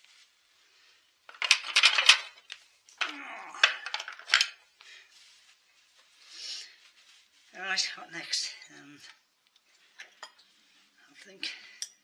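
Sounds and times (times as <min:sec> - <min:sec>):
metal tools clinking: 0:01.3 - 0:04.6.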